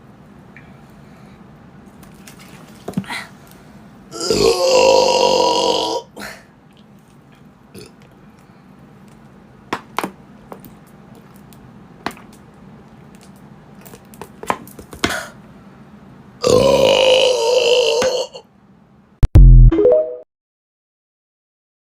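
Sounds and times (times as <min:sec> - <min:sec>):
woman belching: 0:04.2 - 0:06.1, 0:16.4 - 0:18.4.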